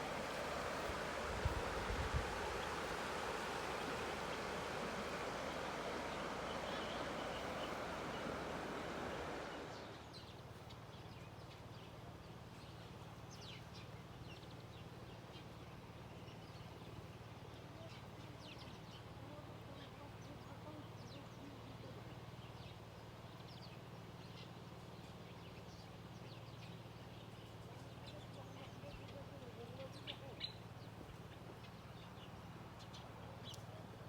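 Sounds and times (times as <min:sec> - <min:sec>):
river water rushing: 0:00.0 - 0:10.0
faint low hum: 0:00.0 - 0:23.7
small birds chirping: 0:00.0 - 0:34.0.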